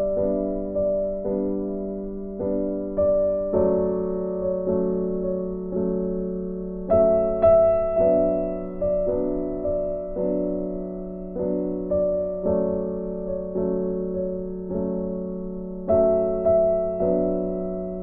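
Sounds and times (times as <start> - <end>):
slow gentle piano chords: 0.0 - 18.0.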